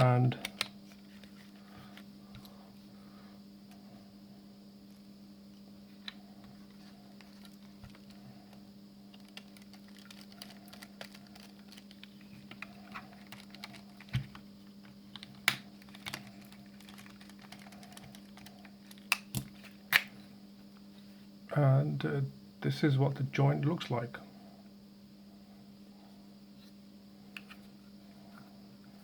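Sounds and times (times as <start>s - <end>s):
steady low hum: 0.0s - 29.0s
sharp plastic snaps: 0.4s - 0.8s.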